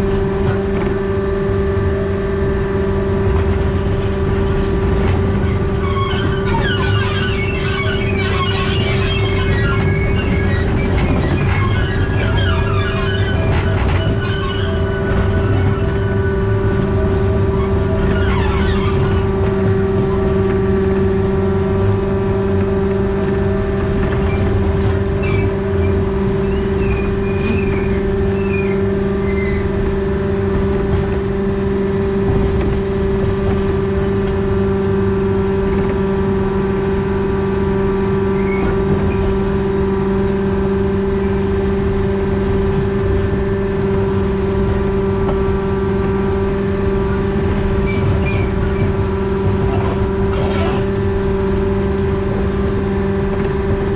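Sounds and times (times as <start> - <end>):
diesel engine droning: 0.0 - 53.9.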